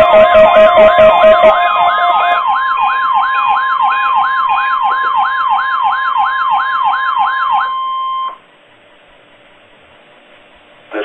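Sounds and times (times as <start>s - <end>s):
fast wailing siren sweep: 0.0s - 8.2s
steady high alert tone: 0.0s - 8.3s.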